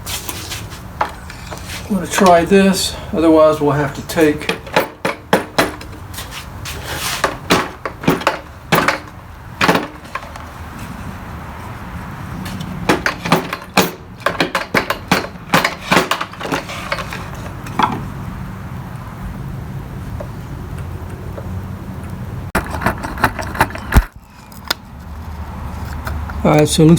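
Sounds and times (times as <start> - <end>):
hand tools clicking and knocking: 0.2 - 10.9, 12.4 - 18.2, 20.2 - 24.8.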